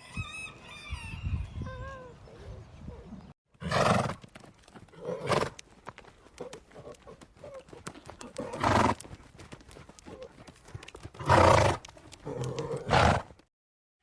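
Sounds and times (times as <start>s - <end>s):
horse hooves clicking: 3.6s - 13.5s.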